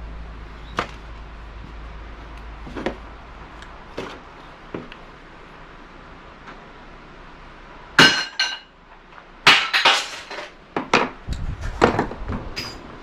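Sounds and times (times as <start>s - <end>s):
metal parts clinking and clanking: 9.5s - 10.6s, 12.6s - 12.9s.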